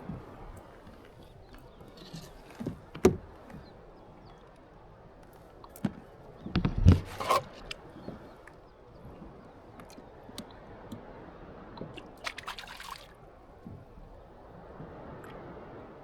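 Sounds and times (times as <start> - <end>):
rubbing against hull: 0.0 - 3.9, 5.9 - 9.4
knocks on kayak hull: 2.5 - 3.7.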